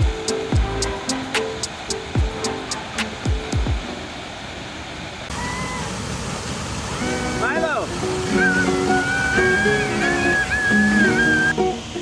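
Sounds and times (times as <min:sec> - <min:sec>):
kick drum: 0:00.0 - 0:00.9, 0:02.2 - 0:02.5, 0:03.3 - 0:03.9
hi-hat: 0:00.0 - 0:03.9
plucked string notes: 0:00.0 - 0:04.0, 0:07.0 - 0:12.0.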